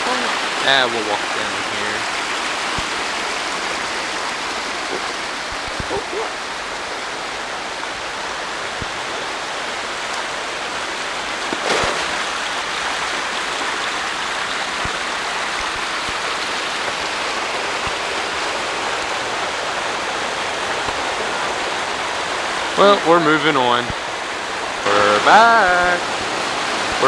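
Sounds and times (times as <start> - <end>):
rushing creek water: 0.0 - 27.0.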